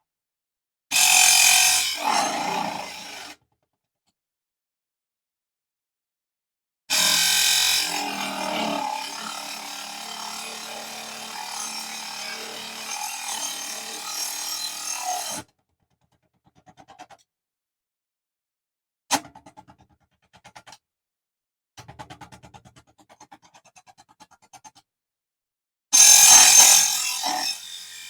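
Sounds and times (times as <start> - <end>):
saw cutting metal: 1.0 - 3.3, 6.9 - 15.4, 26.0 - 28.0.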